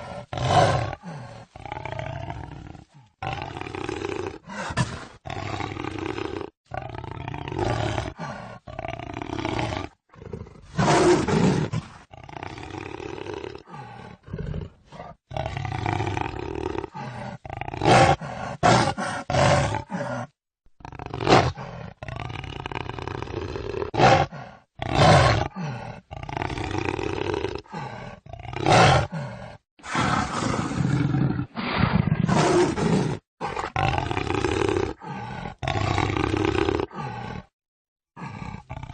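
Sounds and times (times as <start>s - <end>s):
jaguar roaring and growling: 0.0s - 37.5s, 38.2s - 38.9s.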